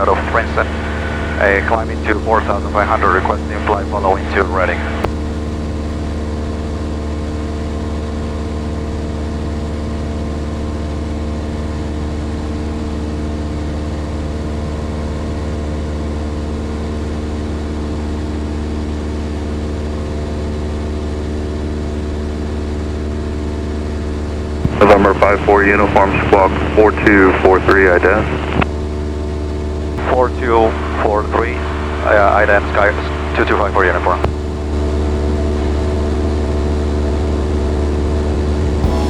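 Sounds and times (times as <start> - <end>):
aircraft engine droning in cabin: 0.0 - 23.7.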